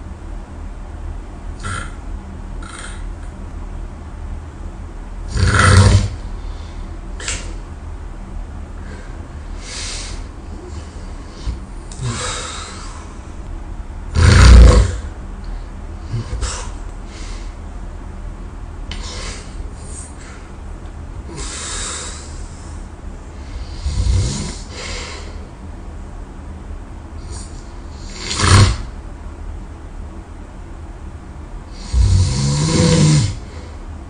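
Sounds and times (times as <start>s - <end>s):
person snoring: 1.6s - 2.0s, 2.6s - 3.0s, 5.3s - 6.2s, 11.4s - 13.0s, 14.1s - 15.1s, 23.5s - 25.2s, 27.3s - 28.9s, 31.7s - 33.7s
faint breaths: 6.2s - 7.6s, 8.8s - 13.4s, 15.4s - 17.6s.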